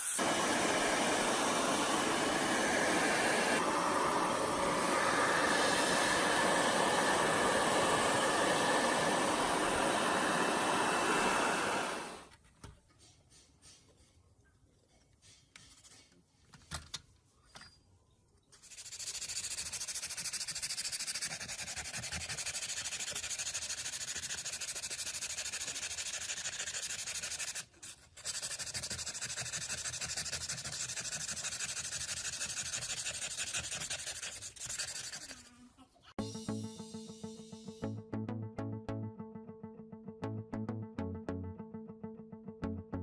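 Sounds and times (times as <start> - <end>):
rapid sanding against surface: 18.6 - 35.7.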